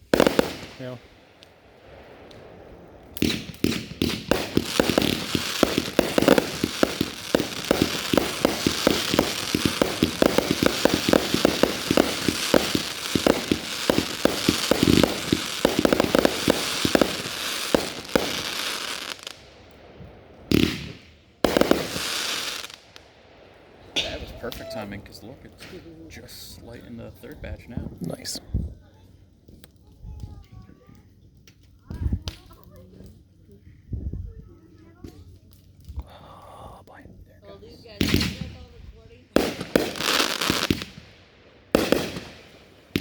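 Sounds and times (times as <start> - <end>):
fireworks launching and bursting: 0.0 - 23.0, 38.0 - 43.0.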